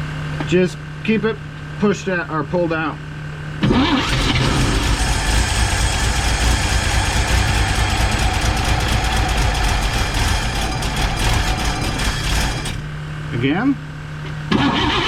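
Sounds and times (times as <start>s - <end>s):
engine cranking then running: 3.6s - 13.0s, 14.5s - 15.0s.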